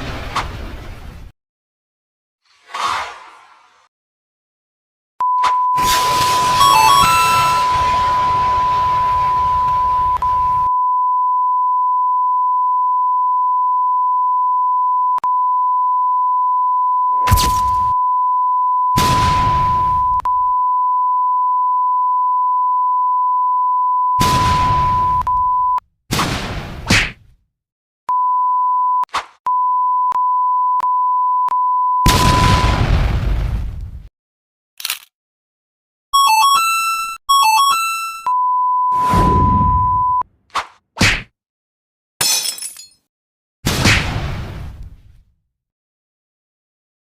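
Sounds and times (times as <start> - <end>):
steady electronic beep: 5.2 - 13.6, 17.8 - 25.8, 36.2 - 40.2
explosion-like blast: 19.0 - 20.0, 24.2 - 25.1, 26.1 - 26.9, 32.1 - 34.1, 39.0 - 40.0, 43.7 - 44.8.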